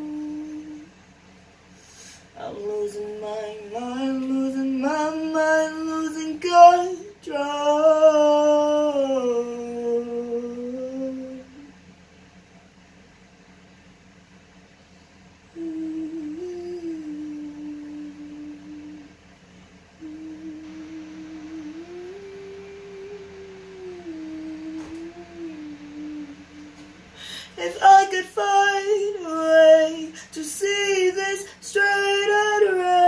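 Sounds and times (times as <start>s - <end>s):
person humming a low tune: 0.0s - 0.9s, 2.4s - 11.8s, 15.5s - 19.2s, 20.0s - 27.0s
person singing unaccompanied: 0.0s - 0.9s, 2.4s - 11.7s, 15.6s - 19.2s, 20.0s - 33.0s.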